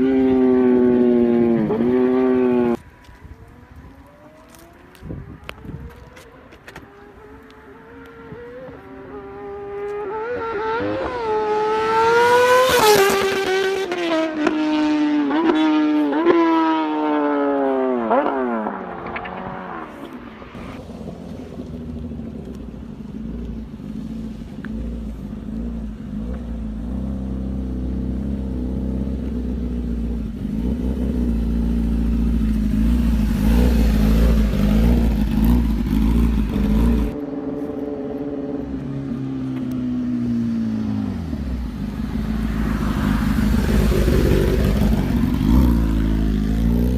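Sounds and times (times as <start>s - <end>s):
motorbike engine accelerating: 3.4s - 46.9s
deep rumbling engine: 18.7s - 37.9s.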